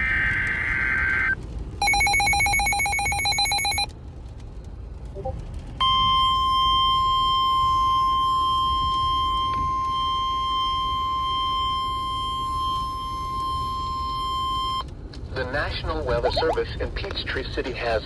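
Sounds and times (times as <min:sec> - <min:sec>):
steady attention tone: 0:05.1 - 0:05.4, 0:16.0 - 0:16.7
rapid pulsing electronic beeps: 0:16.0 - 0:16.8
data-burst screech: 0:16.1 - 0:16.8.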